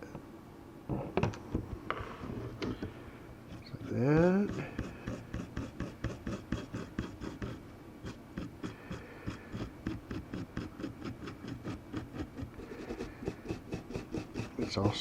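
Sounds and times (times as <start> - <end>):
rapid scrubbing on circuit board: 3.5 - 15.0.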